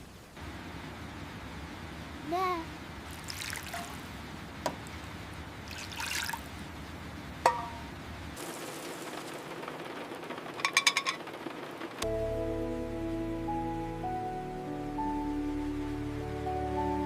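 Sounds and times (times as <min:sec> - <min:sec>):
steady rain: 0:00.0 - 0:17.0
soft music with held notes: 0:12.0 - 0:17.0.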